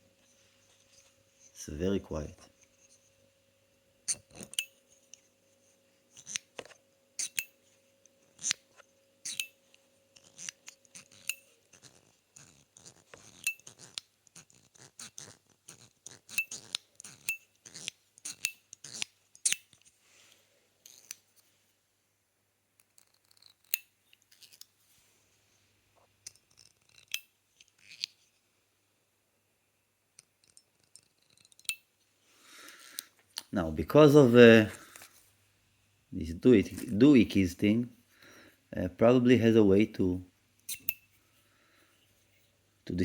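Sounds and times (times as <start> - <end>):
faint steady hum: 0.0 - 43.0
metal fidget toy clicking: 7.2 - 7.5, 9.2 - 9.6, 10.2 - 19.8, 30.2 - 31.9, 40.7 - 41.0.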